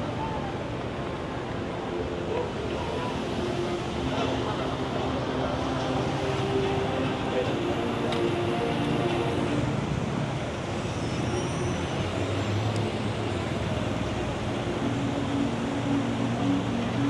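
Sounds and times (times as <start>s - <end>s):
city street traffic: 0.0s - 17.0s.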